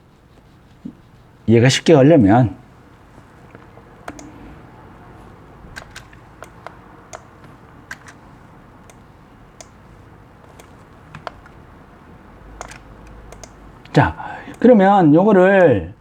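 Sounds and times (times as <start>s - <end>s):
faint room hum: 0.0s - 16.0s
computer keys and mouse clicking: 3.4s - 4.7s, 5.6s - 11.7s, 12.5s - 14.7s.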